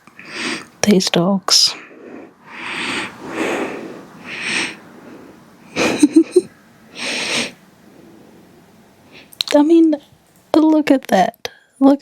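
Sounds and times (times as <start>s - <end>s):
dog breathing noisily: 1.8s - 5.5s, 6.9s - 8.4s.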